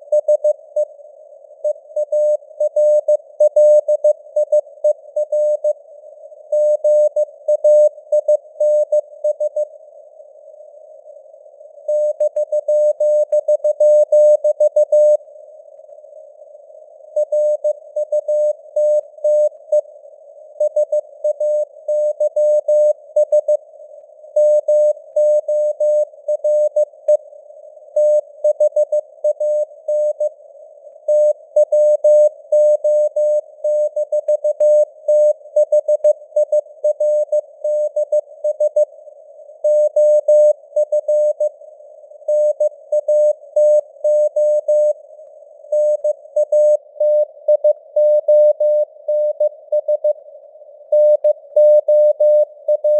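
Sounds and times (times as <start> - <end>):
morse code beeps: 51.0 - 52.9.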